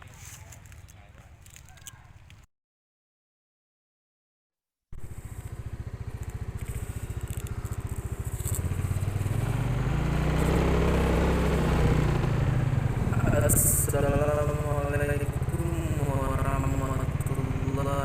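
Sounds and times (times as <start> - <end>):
small engine pulsing: 5.0 - 18.0.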